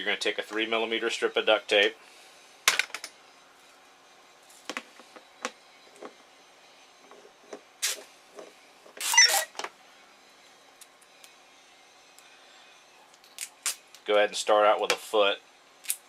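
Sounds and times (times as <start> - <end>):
tape ripping off roll: 7.8 - 8.1, 13.3 - 13.8.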